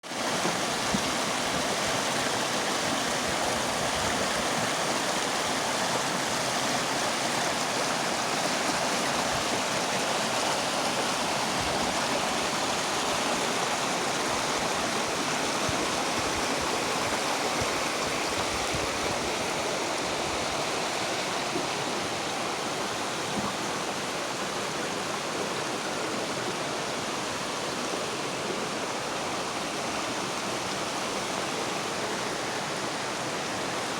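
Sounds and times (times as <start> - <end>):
stream rushing over rocks: 0.0 - 33.9.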